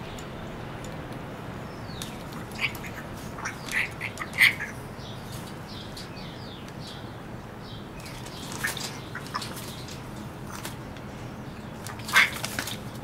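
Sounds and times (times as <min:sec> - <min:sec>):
parrot squawking: 0:02.3 - 0:04.9, 0:11.9 - 0:12.5.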